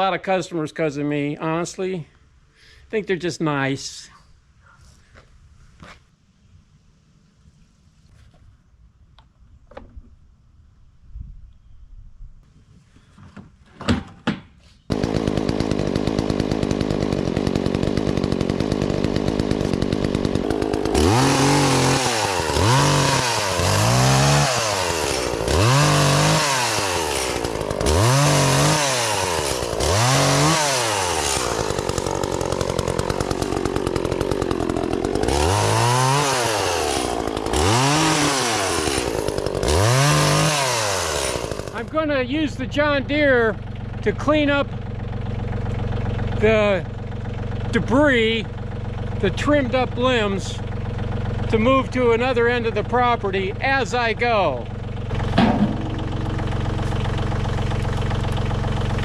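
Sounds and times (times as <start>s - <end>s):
chainsaw idling and revving: 14.9s - 59.0s.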